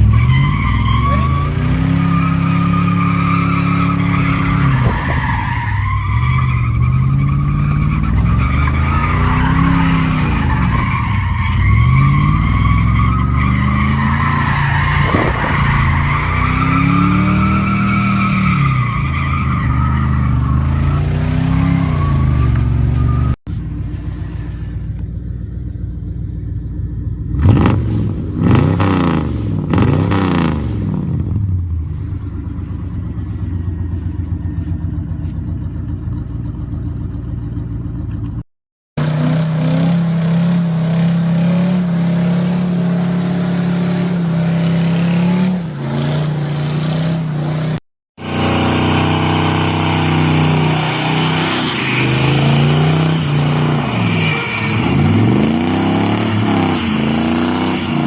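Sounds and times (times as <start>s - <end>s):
car engine revving: 27.2s - 31.5s, 39.0s - 58.0s.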